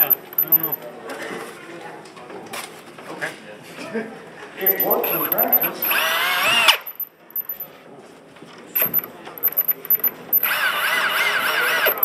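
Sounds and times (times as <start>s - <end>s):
electric robot motors whining: 4.7s - 7.6s, 8.8s - 12.0s.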